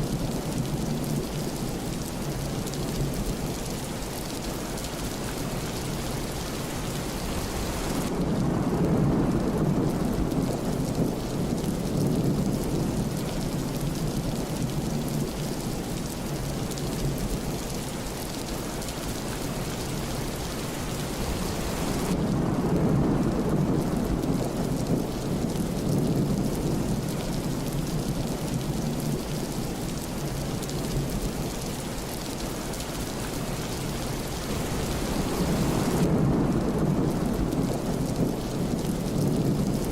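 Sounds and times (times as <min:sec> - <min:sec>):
steady rain falling: 0:00.0 - 0:39.9
thunder rumbling: 0:05.8 - 0:17.6, 0:21.0 - 0:39.9.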